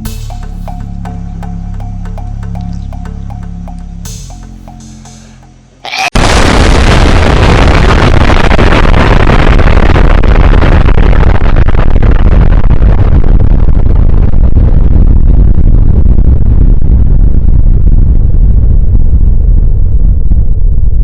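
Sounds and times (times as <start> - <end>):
explosion with deep rumble: 6.2 - 21.0.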